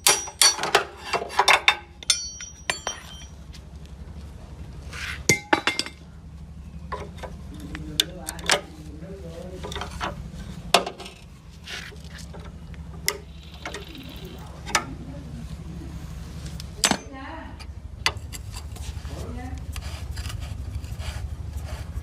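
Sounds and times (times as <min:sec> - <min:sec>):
metal tools clinking: 0:00.0 - 0:03.5, 0:05.3 - 0:06.0
steady low hum: 0:00.0 - 0:22.0.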